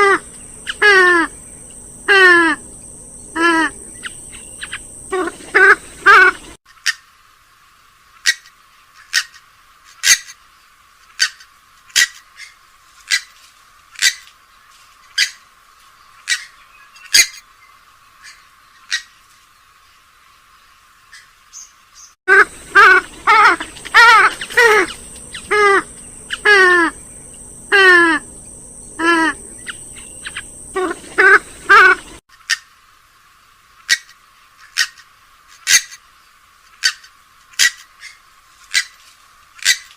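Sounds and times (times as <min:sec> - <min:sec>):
swamphen calls: 0:00.0 - 0:07.0, 0:16.2 - 0:17.4, 0:18.2 - 0:19.2, 0:22.3 - 0:32.7, 0:33.8 - 0:35.0, 0:36.8 - 0:39.0.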